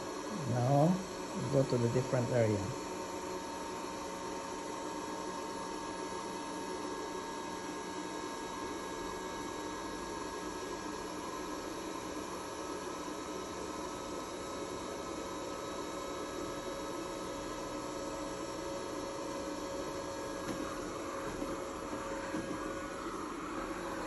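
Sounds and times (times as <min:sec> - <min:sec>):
robot vacuum cleaner whirring: 0:20.3 - 0:24.0.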